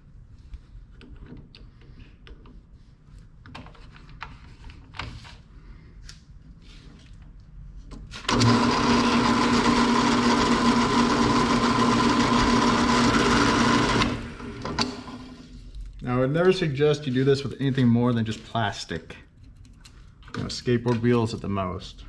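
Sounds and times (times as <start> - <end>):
drill press whining: 8.1 - 15.6.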